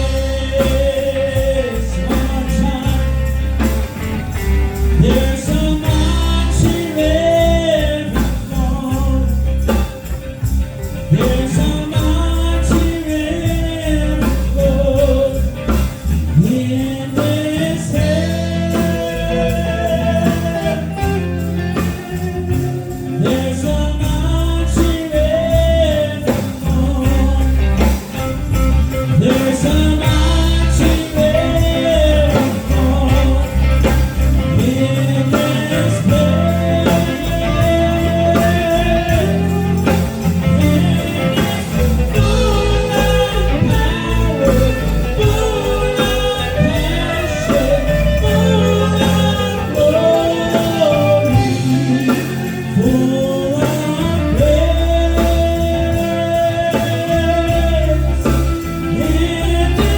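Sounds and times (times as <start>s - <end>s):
band with steady bass line: 0.0s - 59.9s
person singing: 0.0s - 59.9s.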